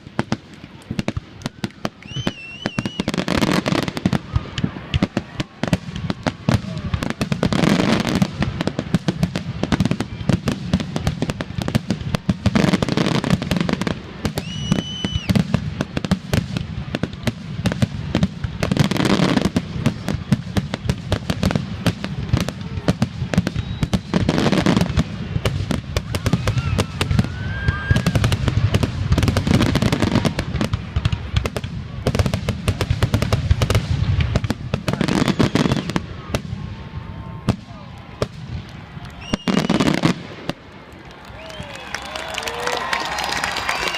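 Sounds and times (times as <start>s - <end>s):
fireworks booms: 0.0s - 40.8s
fireworks bursts and crackling: 0.0s - 43.9s
fireworks whistles: 1.4s - 38.5s, 39.1s - 40.6s, 41.4s - 42.4s, 43.1s - 43.9s.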